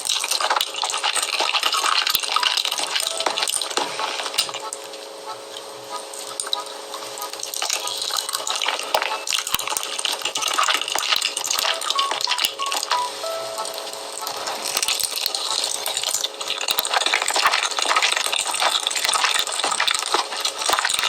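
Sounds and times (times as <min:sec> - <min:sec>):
wet sticky eating noises: 0:00.0 - 0:04.6, 0:06.1 - 0:12.8, 0:14.2 - 0:21.0
sharp clicks: 0:09.4 - 0:15.1.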